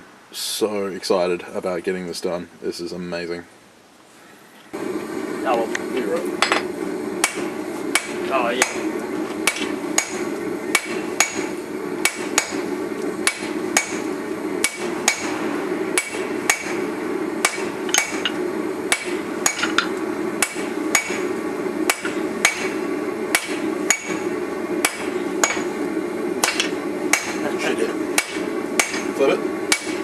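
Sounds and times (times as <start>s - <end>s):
steady low hum: 0.0s - 30.0s
hammer ringing on anvil: 8.0s - 8.9s, 17.4s - 21.2s, 23.4s - 24.2s, 24.8s - 25.8s, 26.4s - 27.4s, 28.2s - 29.9s.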